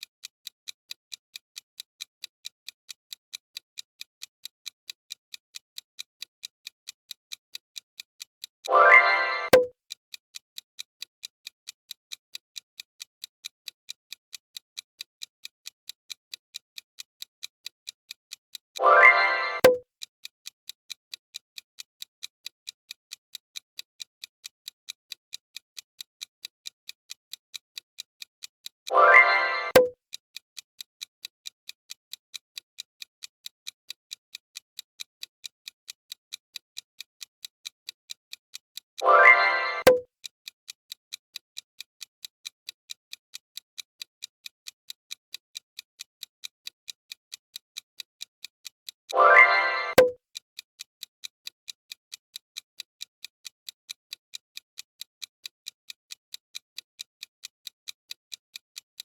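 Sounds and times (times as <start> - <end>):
clock-style timer ticking: 0.0 - 59.0
countdown clock ticking: 8.6 - 9.7, 18.8 - 19.8, 28.9 - 30.0, 39.0 - 40.1, 49.1 - 50.2.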